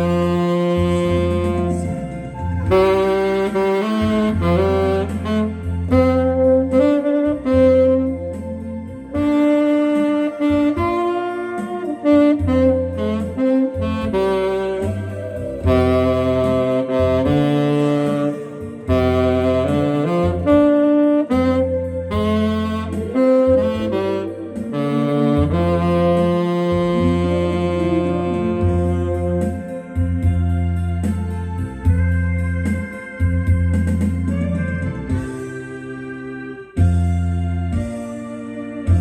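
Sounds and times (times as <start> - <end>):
bass line: 0.0 - 39.0
saxophone melody: 0.0 - 39.0.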